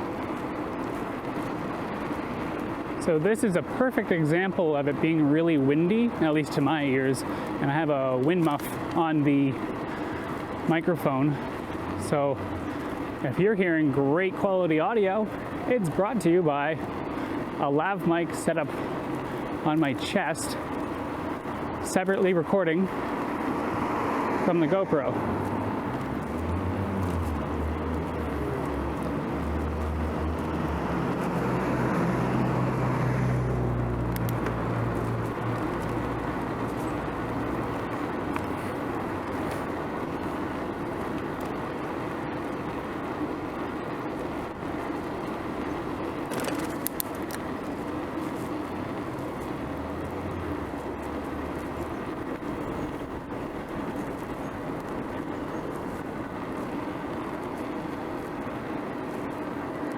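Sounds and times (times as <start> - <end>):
road and traffic noise: 0.0 - 59.9
wind buffeting microphone: 8.3 - 13.9, 18.2 - 59.9.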